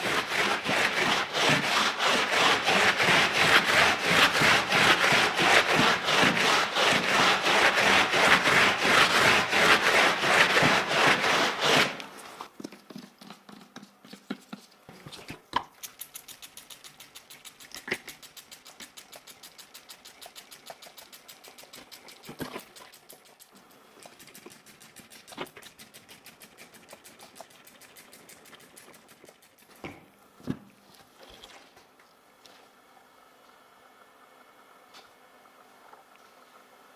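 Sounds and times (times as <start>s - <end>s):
faint fast rubbing: 0.0s - 12.5s.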